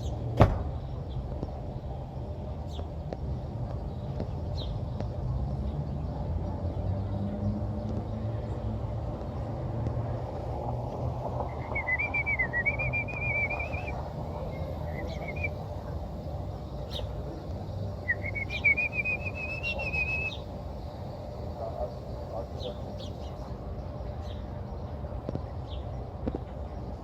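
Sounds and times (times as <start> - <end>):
steady low rumble: 0.0 - 27.0
warbling whistled chirps: 11.5 - 15.7, 18.0 - 20.5.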